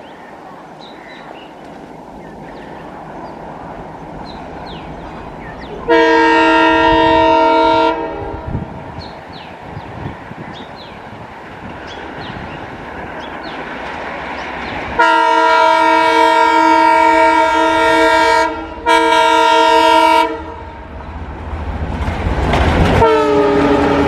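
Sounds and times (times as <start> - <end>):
rumble of approaching train: 0.0 - 24.0
diesel locomotive horn: 5.6 - 8.8, 15.0 - 20.9, 22.9 - 24.0.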